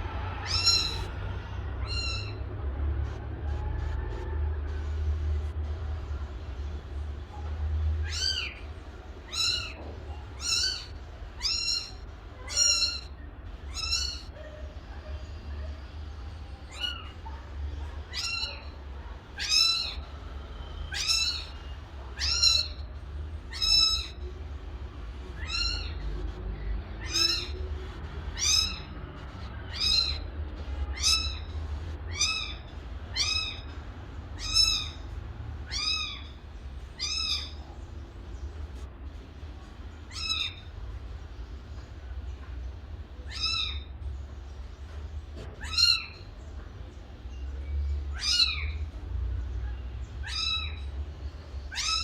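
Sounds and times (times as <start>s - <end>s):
steady low hum: 0.0s - 47.3s
kitten meowing: 0.4s - 1.1s.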